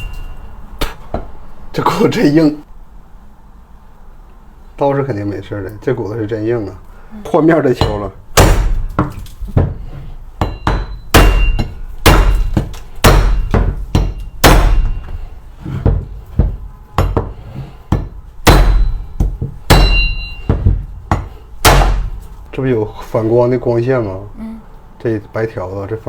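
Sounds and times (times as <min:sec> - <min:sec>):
cleaver chopping bone: 0:07.8 - 0:09.8, 0:10.4 - 0:15.1, 0:20.6 - 0:22.2.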